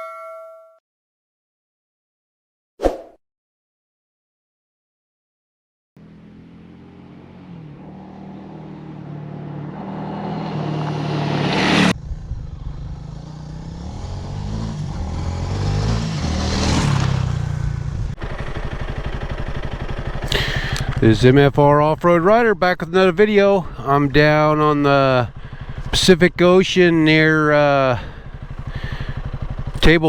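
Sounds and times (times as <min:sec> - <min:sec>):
motorcycle engine running: 0:06.0 - 0:30.0.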